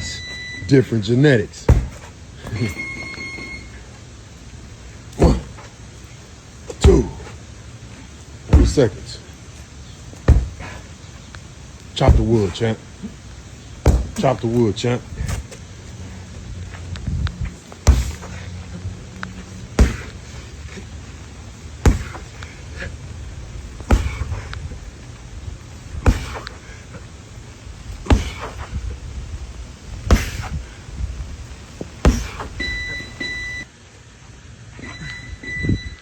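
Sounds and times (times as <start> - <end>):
electronic beep: 0.0 - 0.8, 2.5 - 3.8, 34.8 - 36.0
heavy chopping strikes: 1.6 - 2.7, 5.2 - 5.7, 6.7 - 7.3, 8.5 - 9.0, 10.2 - 10.8, 12.0 - 12.7, 13.8 - 15.5, 17.8 - 18.5, 19.7 - 20.2, 21.8 - 22.6, 23.8 - 24.6, 26.0 - 26.6, 28.0 - 28.8, 30.0 - 30.6, 31.8 - 33.3.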